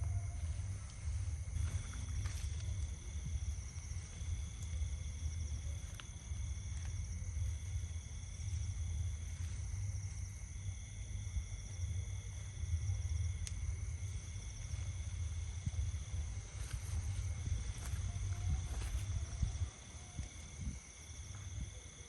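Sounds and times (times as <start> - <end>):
insects trilling: 0.0 - 22.0
wind buffeting microphone: 0.0 - 22.0.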